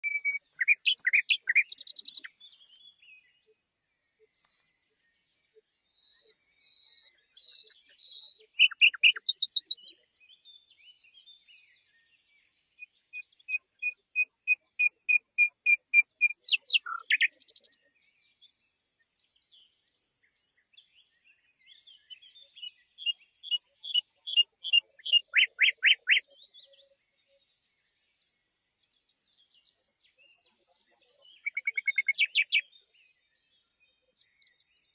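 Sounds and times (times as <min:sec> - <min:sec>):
nightingale singing: 0:00.0 - 0:18.6, 0:19.6 - 0:34.9.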